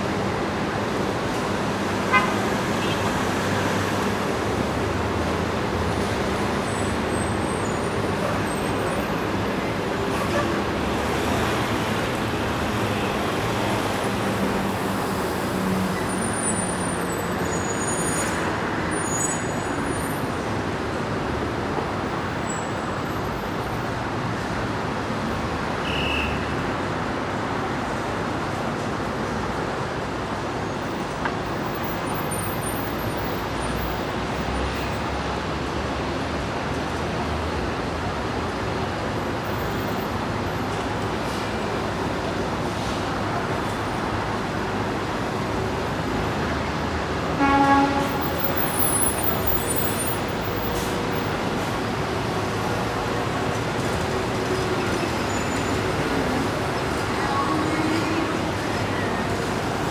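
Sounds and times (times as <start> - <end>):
dense city traffic: 0.0 - 59.9
heavy vehicle engine hum: 31.4 - 59.9.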